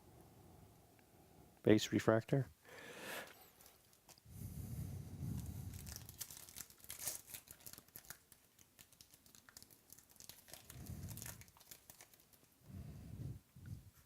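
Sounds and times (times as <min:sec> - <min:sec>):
foil wrapper crinkling and tearing: 0:05.3 - 0:12.6.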